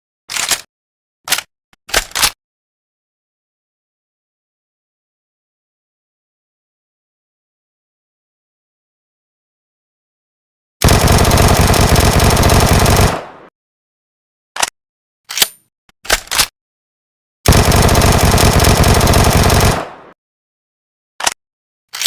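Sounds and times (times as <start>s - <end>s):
submachine gun full-auto bursts: 10.8s - 13.5s, 17.5s - 20.2s
short clicks: 15.3s - 16.5s, 21.2s - 22.0s.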